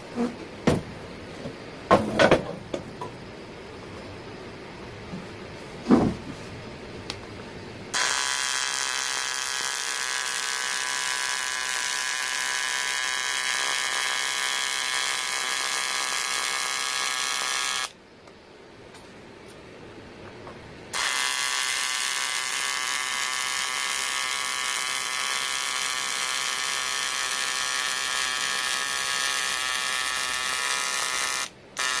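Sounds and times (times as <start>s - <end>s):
short thump: 5.8s - 6.4s
welding arc buzzing and hissing: 7.9s - 18.0s, 20.9s - 32.0s.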